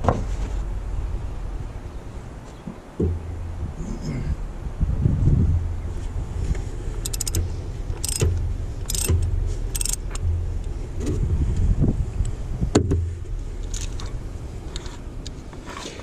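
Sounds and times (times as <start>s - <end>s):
wind buffeting microphone: 0.0s - 16.0s
clicks rattles and scrapes of parts: 7.0s - 11.2s, 13.6s - 16.0s.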